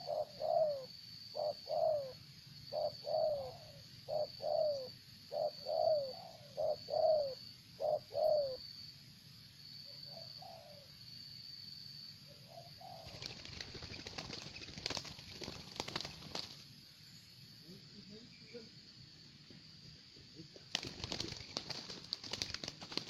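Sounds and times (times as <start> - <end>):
dove cooing: 0.0 - 8.6, 10.1 - 10.9, 12.5 - 14.7.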